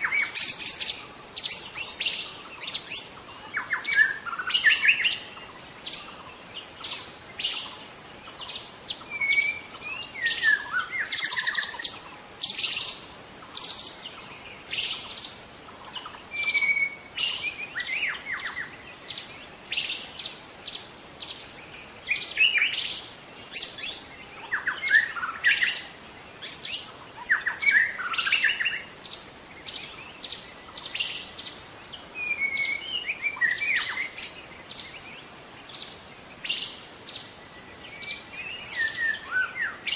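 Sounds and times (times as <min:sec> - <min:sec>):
bird singing whistled phrases: 0:08.9 - 0:13.0, 0:16.3 - 0:18.7, 0:32.2 - 0:34.4, 0:38.0 - 0:39.9.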